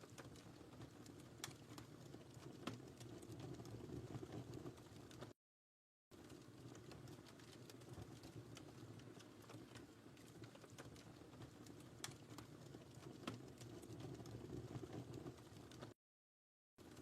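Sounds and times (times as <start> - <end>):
flames rumbling: 0.0 - 5.3, 6.2 - 16.0
wood fire crackling: 0.0 - 5.4, 6.1 - 16.0, 16.8 - 17.0.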